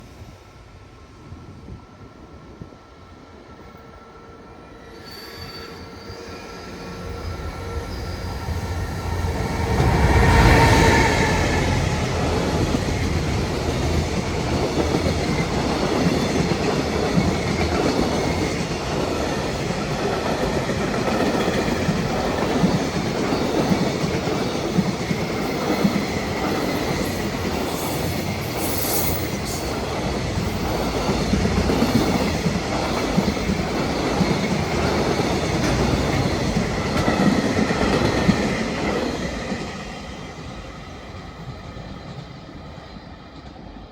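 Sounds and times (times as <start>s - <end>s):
high wheel squeal: 4.8s - 11.7s.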